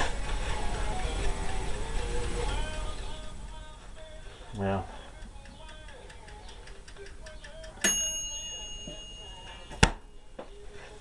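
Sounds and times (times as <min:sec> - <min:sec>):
metal clinking: 0:07.5 - 0:09.8
bell-like ringing strike: 0:07.9 - 0:09.9.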